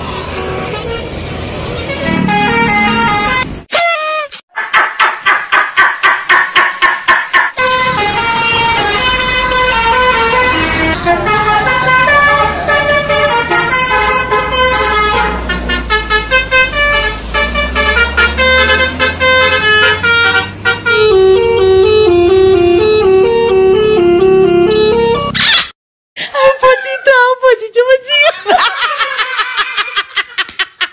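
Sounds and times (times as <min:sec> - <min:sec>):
bus multi-tone horn tune: 0:00.0 - 0:04.4, 0:06.3 - 0:25.4.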